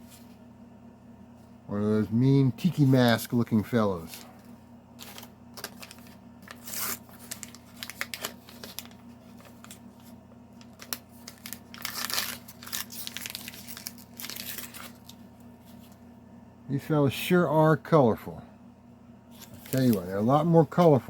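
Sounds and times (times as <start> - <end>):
plastic packaging crinkling: 5.0 - 16.0, 19.4 - 21.0.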